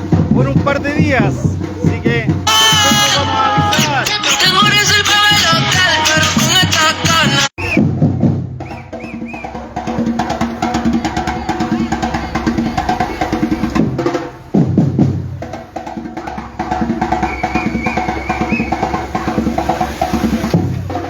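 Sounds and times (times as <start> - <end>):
drum group playing fast rhythm: 0.0 - 21.0.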